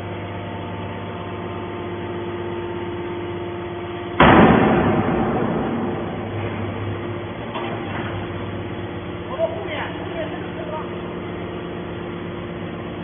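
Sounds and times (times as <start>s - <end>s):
baler motor and pump hum: 0.0s - 13.0s
sudden loud burst of noise: 4.2s - 7.5s.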